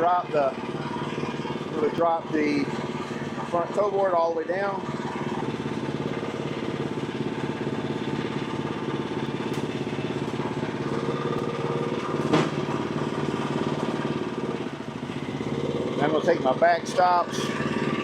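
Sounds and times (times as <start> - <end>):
sawmill engine running: 0.0 - 18.0
sharp clack: 11.4 - 12.8.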